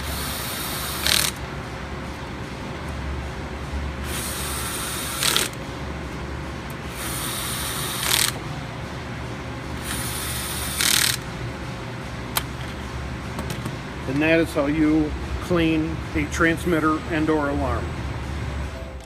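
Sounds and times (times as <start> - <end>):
screwdriver driving screws: 1.0 - 1.4, 5.1 - 5.6, 10.7 - 11.2.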